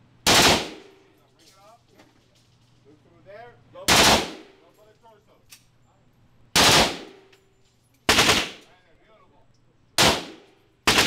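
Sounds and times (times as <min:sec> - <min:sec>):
machine gun bursts: 0:08.1 - 0:08.6.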